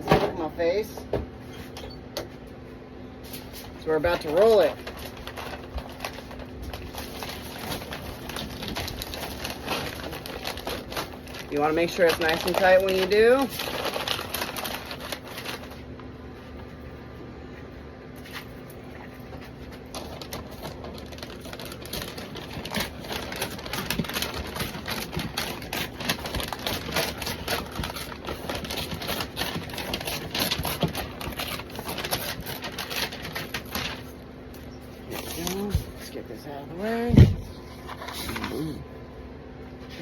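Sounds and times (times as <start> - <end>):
wrapping material crinkling: 3.3 - 16.0, 18.2 - 36.1.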